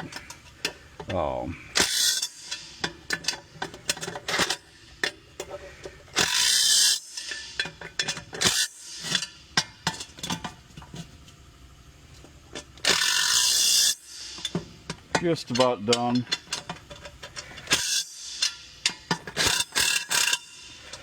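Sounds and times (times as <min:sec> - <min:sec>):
metal tool clicks and scrapes: 0:15.6 - 0:21.0.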